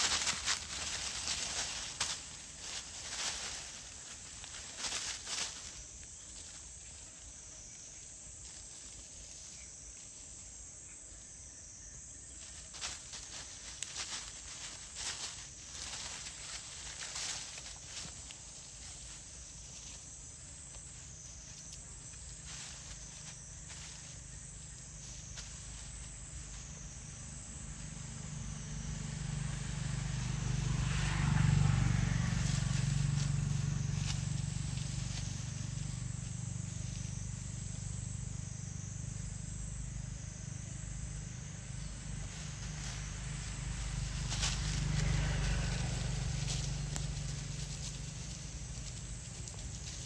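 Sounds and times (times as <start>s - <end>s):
rustling or scraping: 0.0s - 7.1s, 12.4s - 26.6s
passing vehicle engine hum: 0.0s - 9.7s, 12.4s - 50.0s
insects droning: 0.0s - 50.0s.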